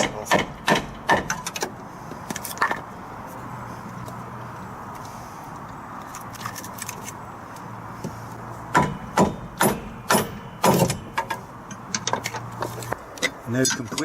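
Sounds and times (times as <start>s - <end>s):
sharp metallic clanks: 8.7s - 12.5s.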